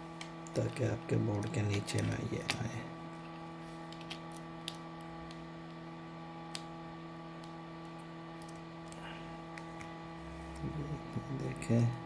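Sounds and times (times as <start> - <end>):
steady electrical hum: 0.0 - 12.0
phone parts clicking: 3.9 - 5.4.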